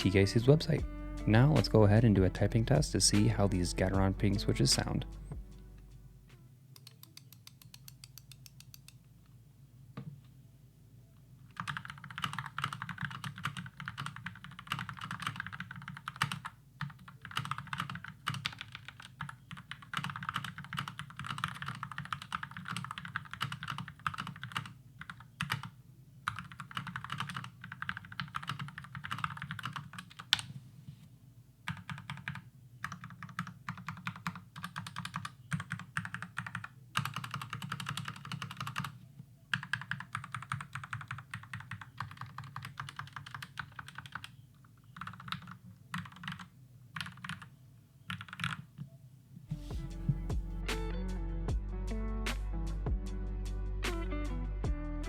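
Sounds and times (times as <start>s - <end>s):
fast typing on keyboard: 11.5s - 30.5s, 31.7s - 47.5s, 48.1s - 48.8s.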